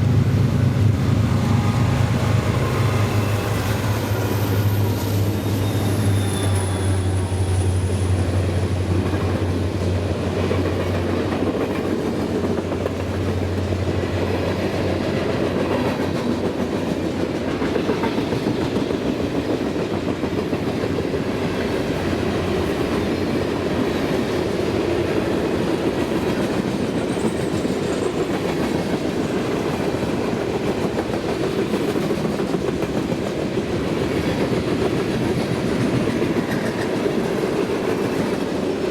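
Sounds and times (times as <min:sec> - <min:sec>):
train wheels clicking over rail joints: 0:01.6 - 0:38.9.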